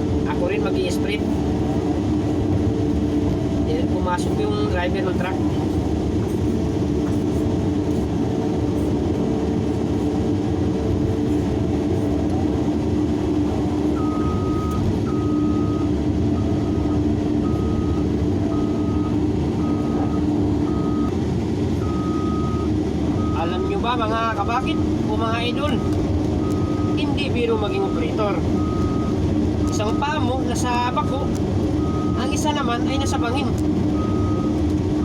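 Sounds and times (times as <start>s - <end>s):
excavator diesel engine running: 0.0s - 35.0s
truck reversing beeper: 13.4s - 21.2s, 21.8s - 35.0s.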